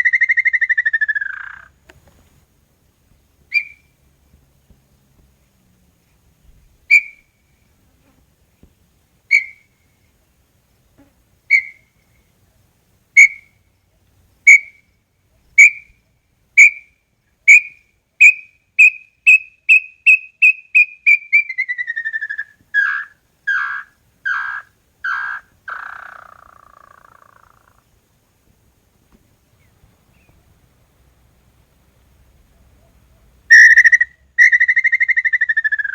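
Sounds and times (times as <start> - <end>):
bird whistled song: 3.5 - 3.9, 6.9 - 7.3, 9.3 - 9.7, 11.5 - 11.9, 13.2 - 13.5, 14.5 - 14.8, 15.6 - 16.0, 17.5 - 27.8, 33.5 - 35.9.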